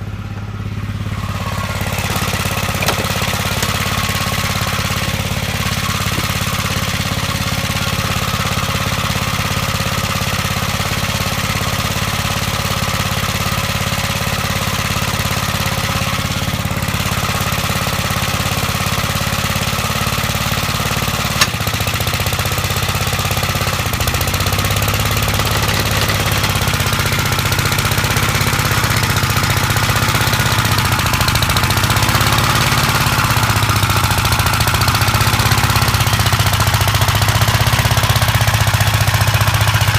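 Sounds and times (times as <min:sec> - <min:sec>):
single-cylinder engine running: 0:00.0 - 0:39.9.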